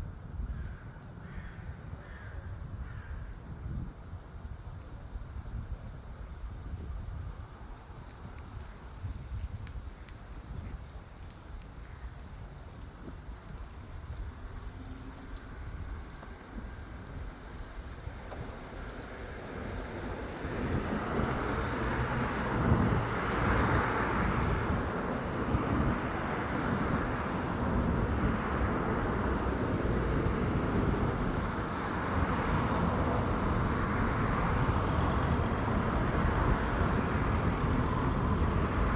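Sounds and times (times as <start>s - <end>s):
road traffic rumble: 4.0s - 38.9s
vehicles passing: 13.7s - 38.9s.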